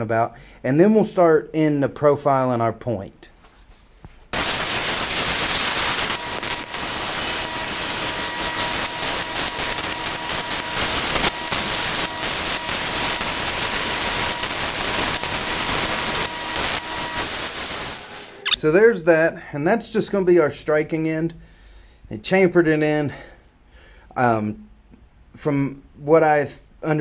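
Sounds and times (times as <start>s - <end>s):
power grinder grinding steel: 4.4s - 18.6s.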